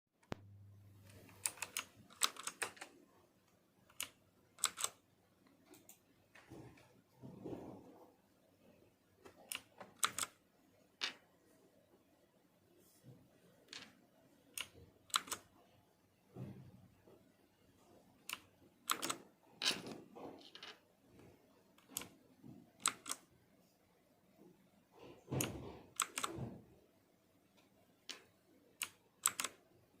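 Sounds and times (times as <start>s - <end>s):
mechanical keyboard clicking: 1.1s - 2.9s, 3.9s - 5.0s, 9.5s - 10.4s, 14.6s - 15.5s, 18.3s - 19.2s, 22.8s - 23.2s, 25.4s - 26.4s, 28.8s - 29.6s.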